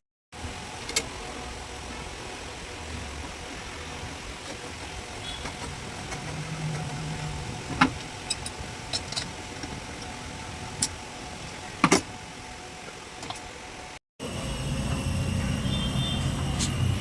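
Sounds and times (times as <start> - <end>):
steady background hum: 0.4 - 17.0
sharp clicks and knocks: 11.8 - 12.1.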